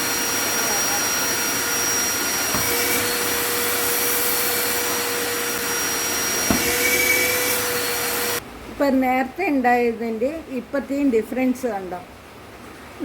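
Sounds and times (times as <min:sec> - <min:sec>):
vacuum cleaner running: 0:00.0 - 0:08.4.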